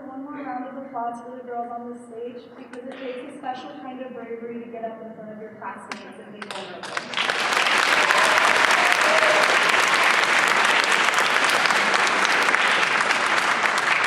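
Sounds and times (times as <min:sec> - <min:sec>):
crowd applause: 0:06.8 - 0:14.0
crowd cheering: 0:07.1 - 0:14.0.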